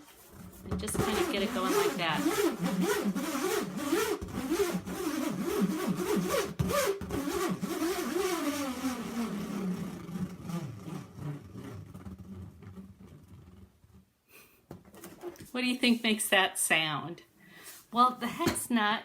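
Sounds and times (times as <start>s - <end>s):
nut whirling inside balloon: 0.0s - 14.1s.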